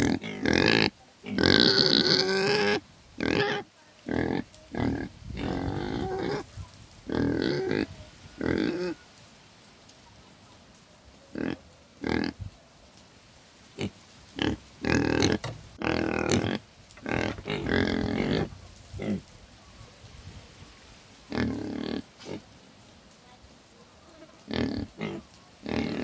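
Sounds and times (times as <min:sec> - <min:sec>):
pig grunting: 0:00.0 - 0:06.5, 0:13.8 - 0:19.2, 0:21.3 - 0:22.4, 0:24.4 - 0:26.0.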